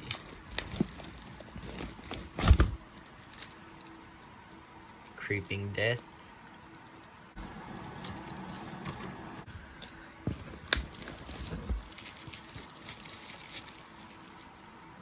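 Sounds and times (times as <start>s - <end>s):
plastic packaging crinkling: 0.0s - 4.2s, 7.8s - 15.0s.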